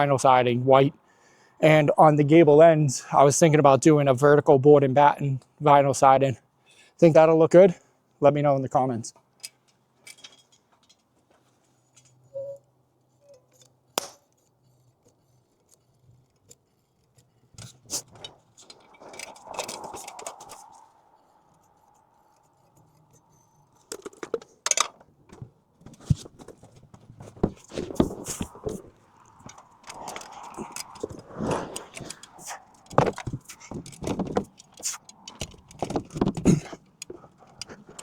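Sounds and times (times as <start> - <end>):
clicks clinks and knocks: 9.4 - 11.1
scraping or rustling: 14.6 - 24.6, 25.4 - 38.0.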